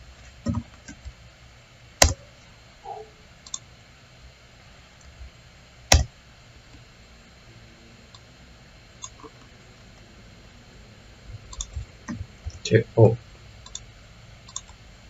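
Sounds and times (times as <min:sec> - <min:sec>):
computer mouse clicks: 0:03.4 - 0:03.7, 0:09.0 - 0:09.4, 0:11.5 - 0:12.6, 0:13.6 - 0:14.8.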